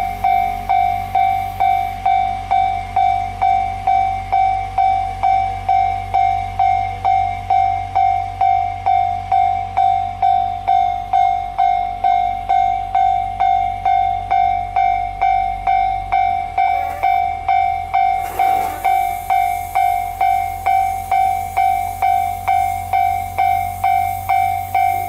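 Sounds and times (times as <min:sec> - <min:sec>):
steady hiss: 0:00.0 - 0:02.0, 0:16.6 - 0:25.0
level crossing bell clanging: 0:15.3 - 0:21.0.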